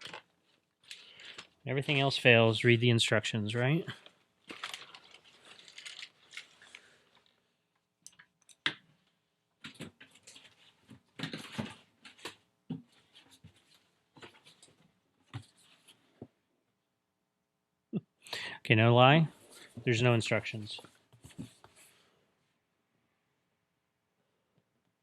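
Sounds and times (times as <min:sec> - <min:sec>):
packaging rustling and clicking: 0:00.0 - 0:01.6, 0:04.4 - 0:07.3.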